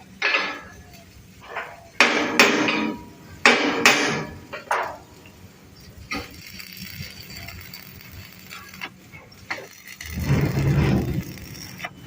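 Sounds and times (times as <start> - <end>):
sharp metal knocks: 2.0 - 5.0.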